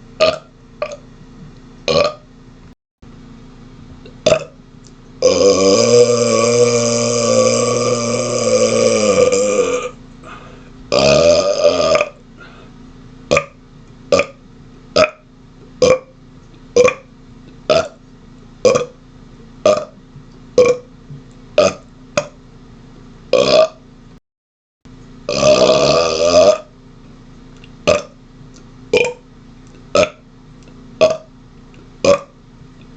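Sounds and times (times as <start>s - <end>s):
man burping: 0.2s - 1.0s, 1.9s - 2.2s, 4.2s - 4.6s, 5.2s - 12.2s, 14.1s - 14.4s, 17.7s - 18.0s, 18.6s - 19.0s, 19.6s - 20.0s, 21.6s - 21.8s, 23.3s - 23.8s, 25.3s - 26.7s, 27.9s - 28.2s, 29.9s - 30.2s, 31.0s - 31.3s, 32.0s - 32.4s.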